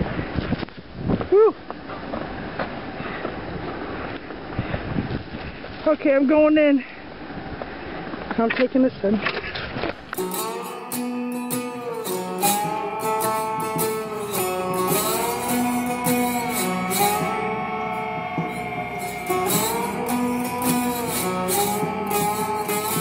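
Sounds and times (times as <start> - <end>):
guitar music with beat: 10.0 - 23.0.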